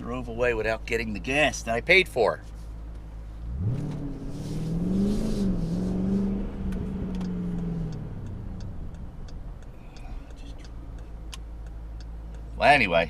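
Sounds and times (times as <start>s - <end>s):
car engine accelerating: 2.9s - 12.6s
regular light ticking: 6.6s - 12.7s.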